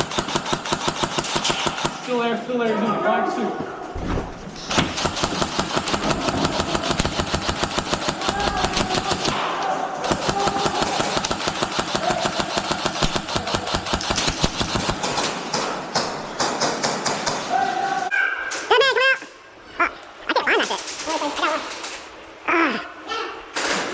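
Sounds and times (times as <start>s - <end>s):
airsoft guns firing full auto: 0.0s - 2.3s, 4.6s - 9.4s, 10.0s - 17.2s.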